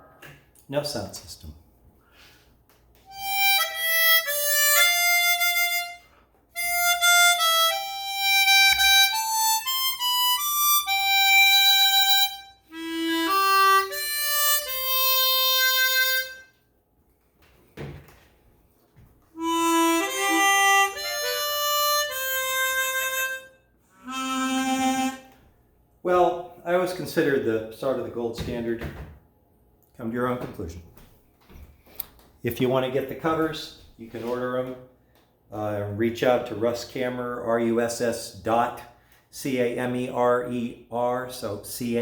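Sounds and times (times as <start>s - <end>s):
chromatic harmonica melody: 3.0s - 16.7s, 19.3s - 25.7s.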